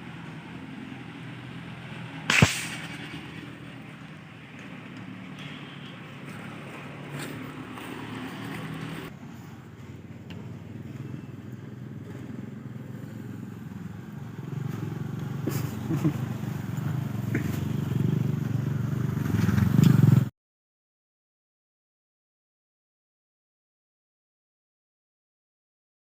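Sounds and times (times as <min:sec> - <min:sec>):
vehicle engine running: 0:00.0 - 0:20.3
sharp click: 0:02.3 - 0:03.2.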